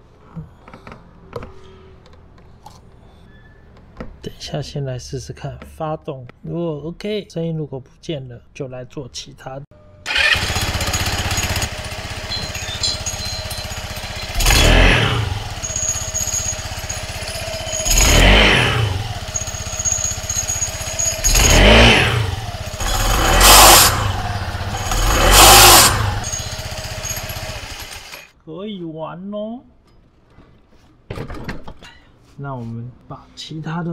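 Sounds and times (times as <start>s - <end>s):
scooter engine idling and revving: 10.1s - 28.3s.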